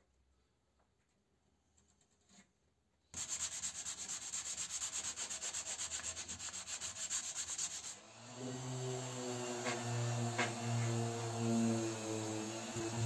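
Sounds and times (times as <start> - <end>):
sandpaper rubbing on wood: 3.2 - 8.0.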